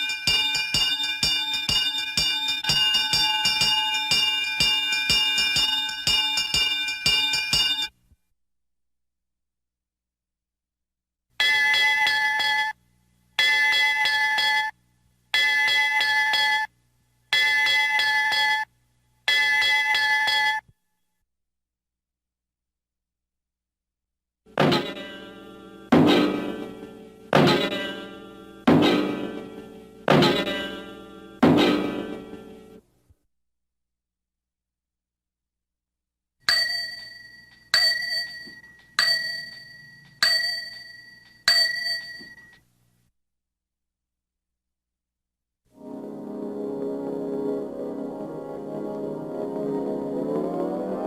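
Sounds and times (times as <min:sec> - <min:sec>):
small bell ringing: 0:00.0 - 0:07.9, 0:36.5 - 0:42.6.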